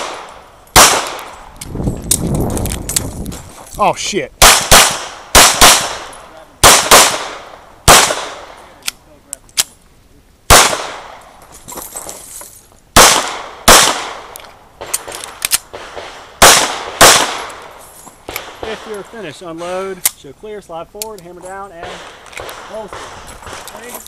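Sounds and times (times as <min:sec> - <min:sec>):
pistol shots: 0:00.0 - 0:01.4, 0:04.4 - 0:08.6, 0:10.5 - 0:11.2, 0:13.0 - 0:17.7, 0:18.3 - 0:19.7, 0:21.8 - 0:23.9.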